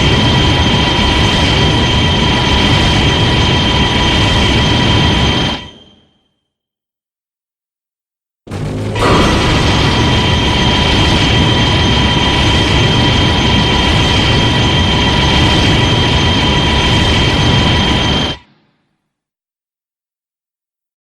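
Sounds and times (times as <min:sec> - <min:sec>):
monster rumbling and screeching: 0:09.0 - 0:12.0.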